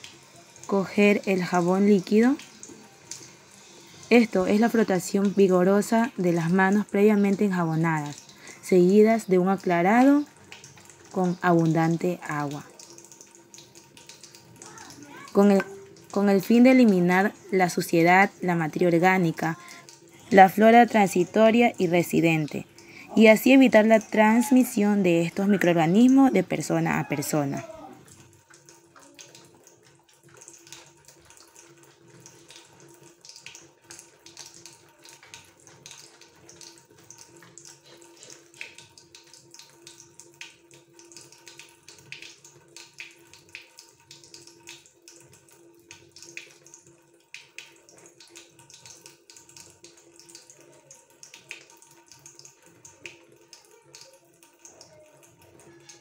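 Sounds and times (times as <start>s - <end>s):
water splashing from washing hands: 0.0s - 56.0s
tap running: 9.6s - 24.1s.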